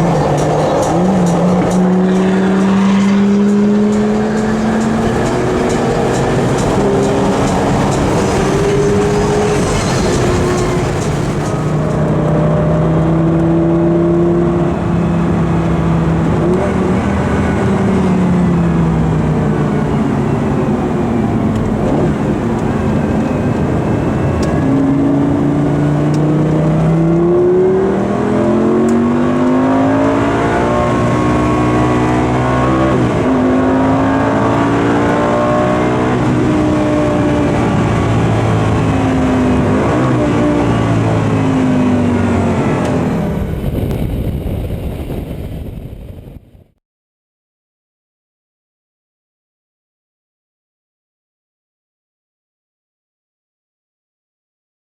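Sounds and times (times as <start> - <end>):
sports car engine revving: 0.0 - 43.5.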